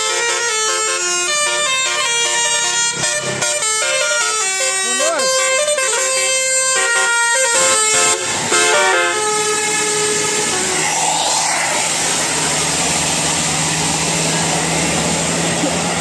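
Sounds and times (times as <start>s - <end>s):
multi-tone bus horn melody: 0.0s - 10.7s
bus hum and hiss: 6.0s - 16.0s.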